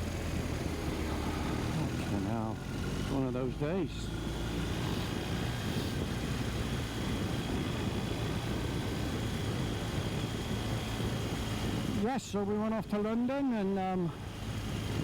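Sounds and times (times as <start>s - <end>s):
motorcycle engine hum: 0.0s - 15.0s
road noise: 0.0s - 15.0s
wind rush: 4.1s - 12.2s, 14.1s - 15.0s.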